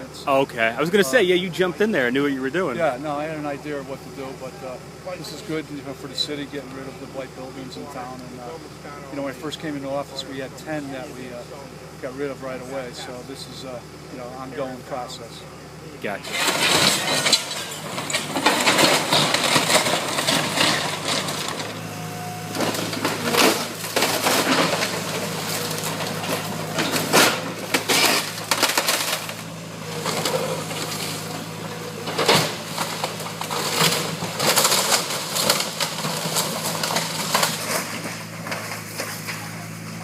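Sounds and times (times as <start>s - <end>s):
excavator diesel engine running: 0.0s - 40.0s
timber crunching and splintering: 16.3s - 40.0s.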